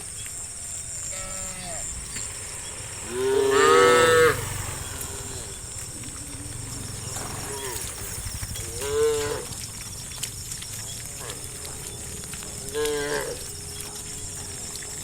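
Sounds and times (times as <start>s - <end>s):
background hiss: 0.0s - 10.5s
cows mooing: 0.3s - 9.8s, 11.2s - 15.0s.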